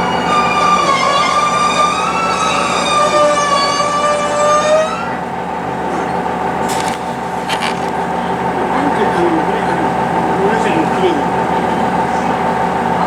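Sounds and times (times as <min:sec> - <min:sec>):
train wheels squealing: 0:00.0 - 0:06.4
railcar running noise: 0:00.0 - 0:13.0.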